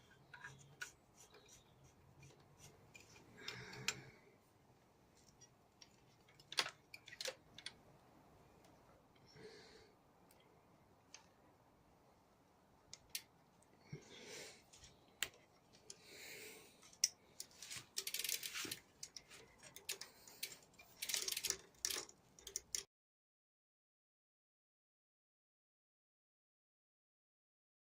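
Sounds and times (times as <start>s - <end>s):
metallic tool clicks and clatter: 16.8s - 22.8s
quick clicks and rattling: 16.9s - 22.9s.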